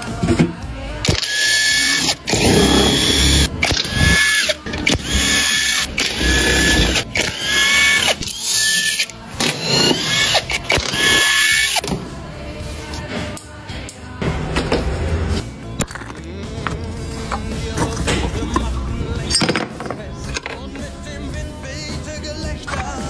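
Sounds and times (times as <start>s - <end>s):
power tool whirring: 1.0s - 11.8s.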